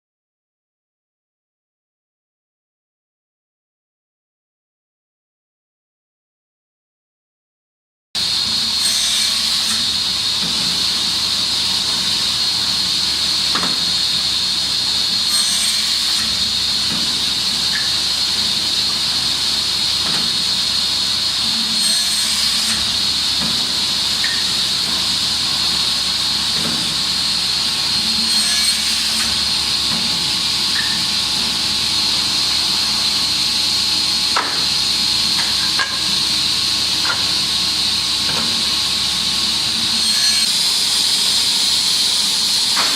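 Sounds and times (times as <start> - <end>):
saw hissing: 8.4 - 42.9.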